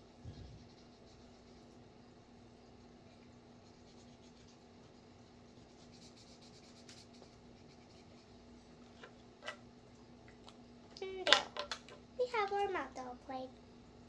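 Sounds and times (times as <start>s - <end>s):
marker drawing on paper: 2.7s - 8.4s.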